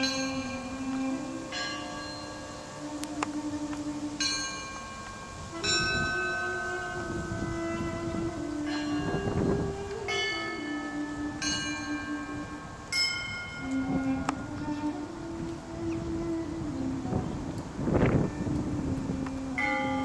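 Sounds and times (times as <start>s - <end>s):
church bells ringing: 0.0s - 2.8s, 4.2s - 6.5s, 8.7s - 13.8s, 19.6s - 20.0s
duduk holding long notes: 0.0s - 20.0s.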